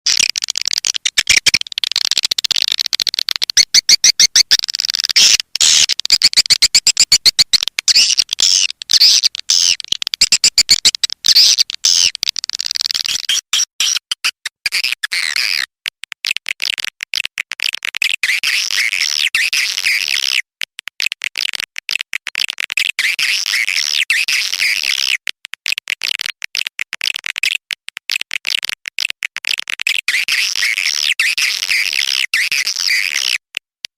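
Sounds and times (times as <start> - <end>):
swiftlets chirping and twittering: 0.1 - 13.4.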